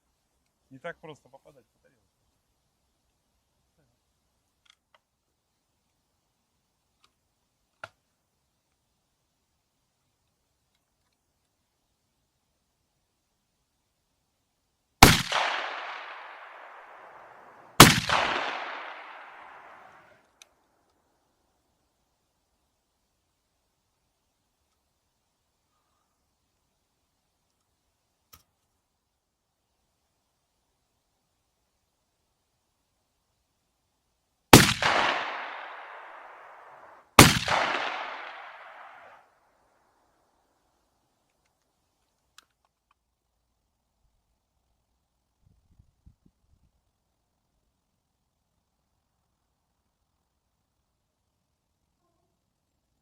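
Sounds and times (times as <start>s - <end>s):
shotgun shots with echo: 15.0s - 20.0s, 34.5s - 39.2s.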